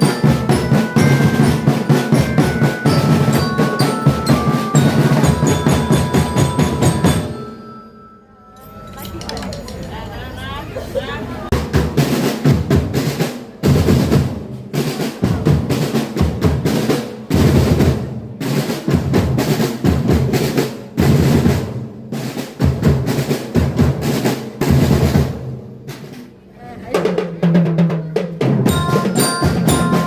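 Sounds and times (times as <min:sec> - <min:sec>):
bass drums: 0:00.0 - 0:07.4, 0:28.5 - 0:30.0
snare drum rolls: 0:00.0 - 0:07.4.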